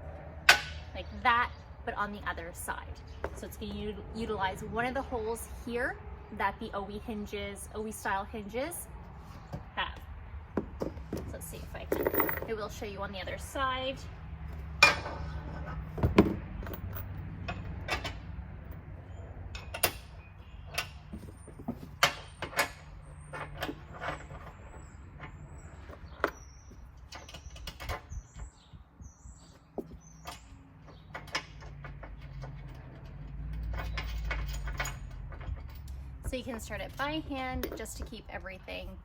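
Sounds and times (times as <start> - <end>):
metal bolts clinking on hinge: 14.8 - 18.8, 29.8 - 36.0.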